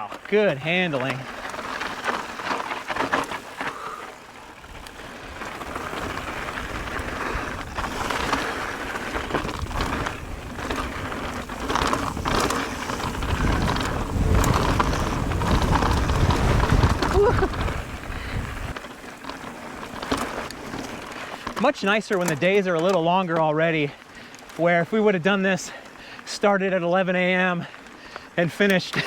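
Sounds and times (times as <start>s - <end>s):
bike knocking and rattling: 0.0s - 24.6s
bike tyres rolling on dirt trail: 0.0s - 29.0s
wind rumble on microphone: 4.6s - 18.8s.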